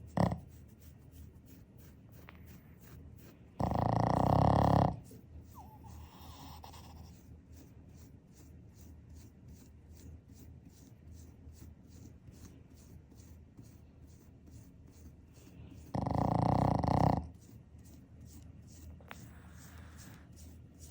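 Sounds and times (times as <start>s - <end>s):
dog snoring: 0.0s - 0.5s, 3.6s - 7.1s, 15.8s - 17.4s, 19.0s - 20.3s
hand stroking fur: 11.9s - 20.9s.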